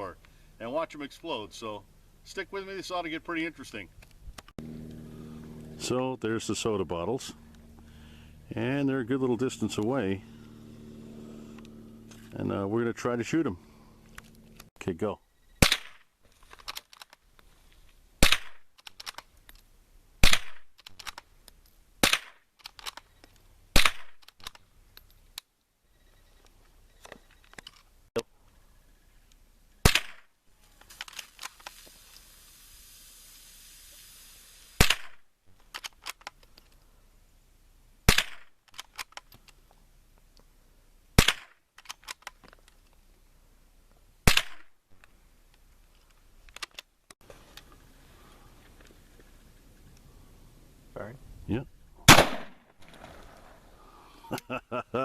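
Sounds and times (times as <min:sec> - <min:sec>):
gunshots: 0:15.6 - 0:16.0, 0:18.2 - 0:18.6, 0:20.2 - 0:20.7, 0:22.0 - 0:22.4, 0:23.7 - 0:24.2, 0:29.8 - 0:30.3, 0:34.8 - 0:35.2, 0:38.1 - 0:38.5, 0:41.2 - 0:41.6, 0:44.3 - 0:44.7, 0:52.1 - 0:53.3
small clicks and knocks: 0:16.2 - 0:18.0, 0:18.7 - 0:19.7, 0:35.5 - 0:36.9, 0:41.7 - 0:43.0, 0:45.0 - 0:47.8
steady hiss: 0:30.6 - 0:35.5.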